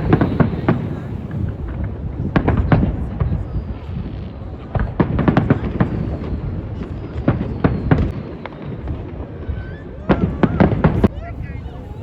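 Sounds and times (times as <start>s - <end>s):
distant fireworks rumble: 0.0s - 12.0s
fireworks bangs and crackles: 0.0s - 12.0s.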